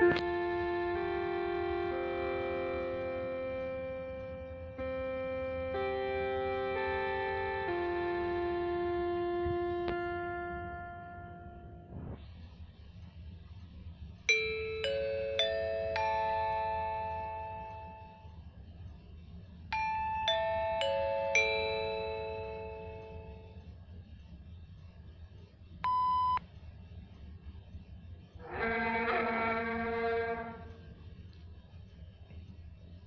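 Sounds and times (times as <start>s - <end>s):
electronic bell-like chime: 19.8s - 23.6s.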